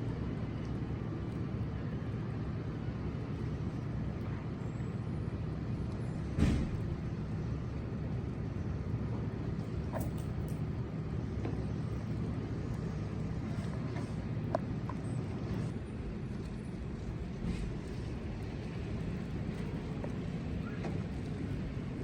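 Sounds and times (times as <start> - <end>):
car engine and tyres rumbling: 0.3 - 22.0
thump: 6.4 - 6.8.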